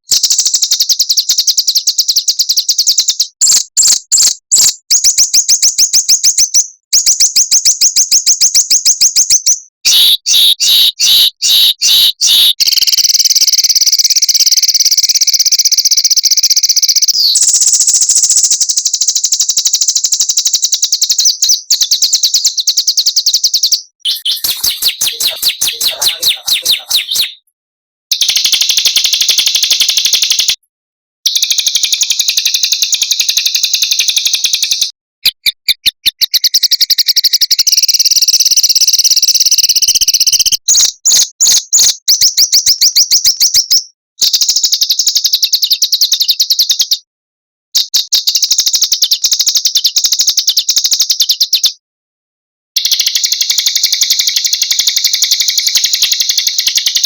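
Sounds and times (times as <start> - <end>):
songbirds trilling: 24.1 - 27.4.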